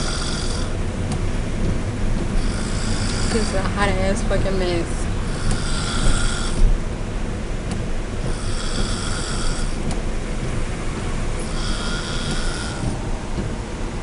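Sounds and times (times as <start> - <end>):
woman snoring: 0.0 - 0.7, 2.4 - 3.7, 5.3 - 6.5, 8.4 - 9.8, 11.5 - 12.8
steady low rumble: 0.0 - 14.0.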